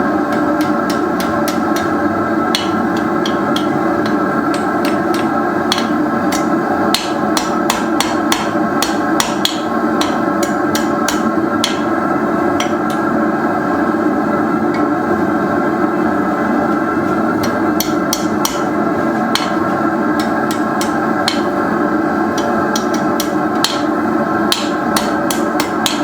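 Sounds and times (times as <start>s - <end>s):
steady loud drone: 0.0s - 26.0s
hammer striking metal on anvil: 0.3s - 11.9s, 17.4s - 18.7s, 19.3s - 19.6s, 20.2s - 21.6s, 22.4s - 23.9s, 24.5s - 26.0s.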